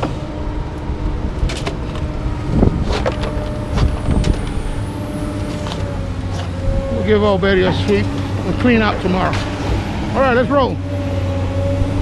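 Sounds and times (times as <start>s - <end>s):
vehicle engine idling: 0.0s - 12.0s
sharp knocks and clanks: 7.6s - 9.9s.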